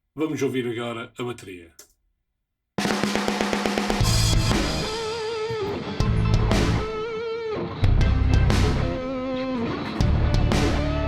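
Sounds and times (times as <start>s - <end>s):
rock music with drums and bass: 2.8s - 11.0s.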